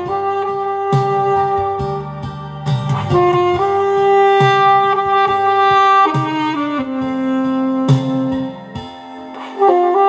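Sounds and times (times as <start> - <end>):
alto saxophone long note: 0.0 - 8.8, 9.4 - 10.0
accompaniment chords: 0.0 - 10.0.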